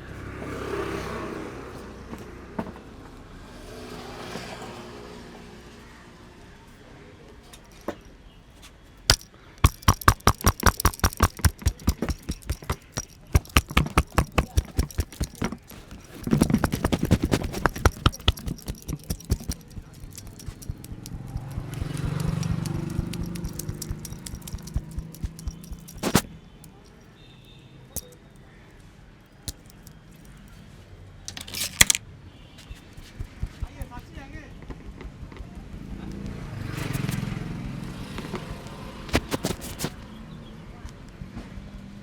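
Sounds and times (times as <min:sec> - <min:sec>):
hands slapping and tapping: 0:09.1 - 0:26.2, 0:33.0 - 0:33.9.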